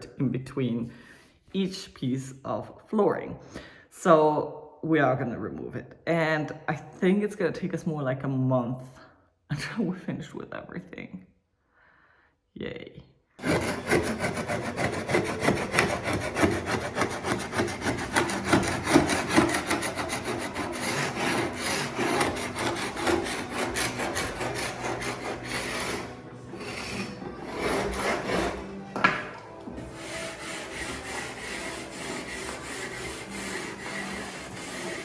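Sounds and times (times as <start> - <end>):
tool rasping on wooden floorboards: 13.4 - 35.0.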